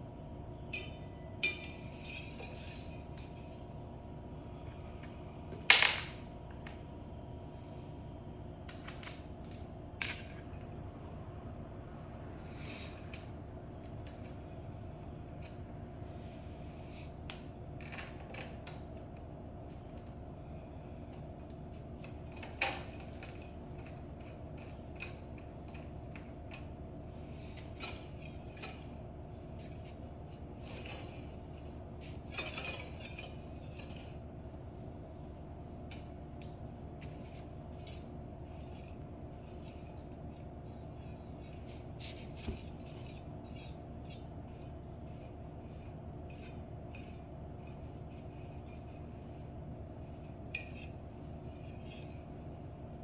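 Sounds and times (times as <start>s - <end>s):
steady hum: 0.0s - 53.0s
metal tools clinking: 0.8s - 3.3s.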